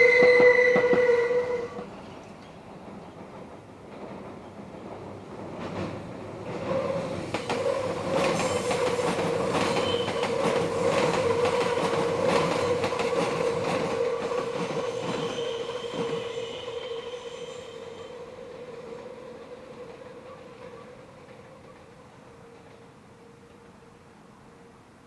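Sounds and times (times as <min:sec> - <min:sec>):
train wheels squealing: 0:00.0 - 0:02.1, 0:06.7 - 0:22.8
wheels clicking on rail joints: 0:01.8 - 0:16.8.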